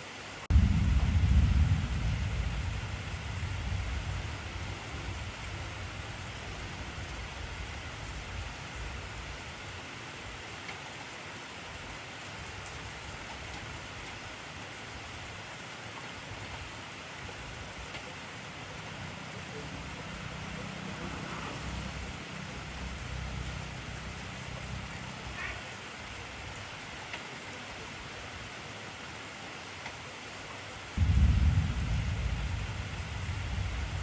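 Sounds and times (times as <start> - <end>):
heavy rain hissing and pattering: 0.0 - 34.0
deep thunder rumble: 0.5 - 9.2, 31.0 - 34.0.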